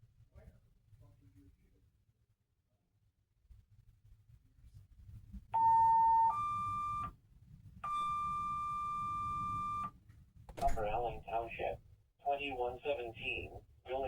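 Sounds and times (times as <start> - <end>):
two-tone radio paging tones: 5.6 - 7.1, 7.8 - 9.9, 10.6 - 14.0.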